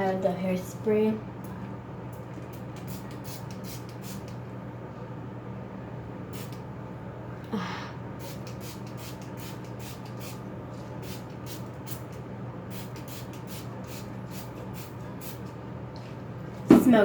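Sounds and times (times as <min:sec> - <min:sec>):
steady low hum: 0:00.0 - 0:17.0
hairspray spritzes: 0:08.2 - 0:10.4, 0:11.0 - 0:12.0, 0:12.7 - 0:15.4.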